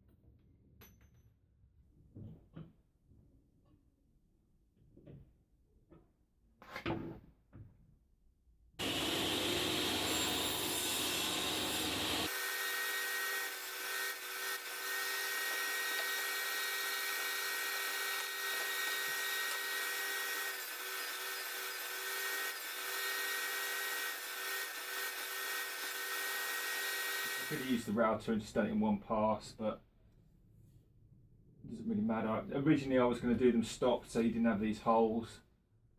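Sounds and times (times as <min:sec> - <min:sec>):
woodworking power tool whining: 0:08.8 - 0:27.9.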